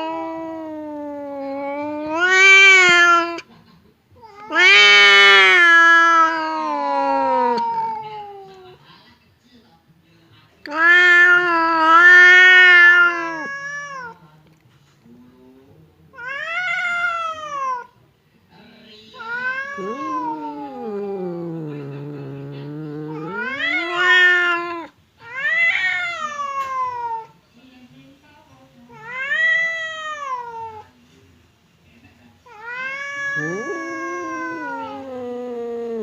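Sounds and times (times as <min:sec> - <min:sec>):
cats yowling: 0:00.0 - 0:03.4, 0:04.3 - 0:08.5, 0:10.7 - 0:14.2, 0:16.2 - 0:17.9, 0:19.2 - 0:27.3, 0:29.0 - 0:30.8, 0:32.5 - 0:36.0.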